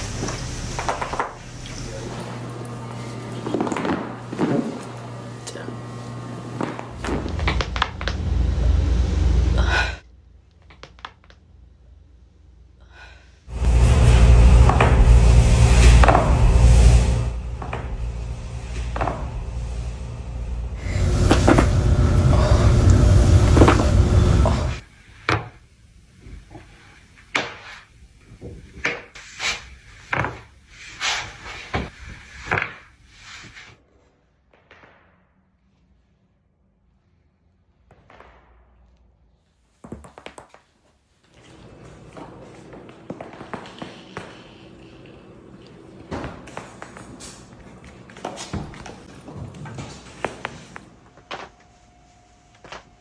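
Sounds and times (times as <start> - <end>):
rumbling handling noise: 0.0 - 9.8, 13.5 - 24.8
breathy gasp: 9.6 - 10.0
loud noise: 13.5 - 24.8.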